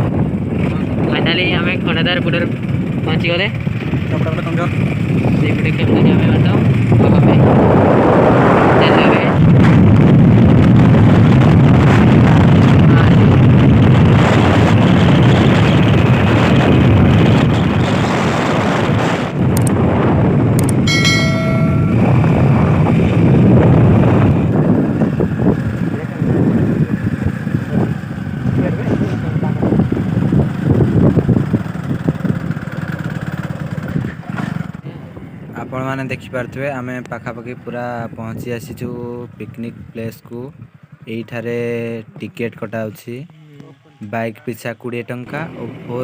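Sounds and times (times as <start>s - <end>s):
wind rushing over microphone: 0.0s - 43.4s, 45.1s - 46.0s
motorcycle engine running: 20.7s - 34.8s.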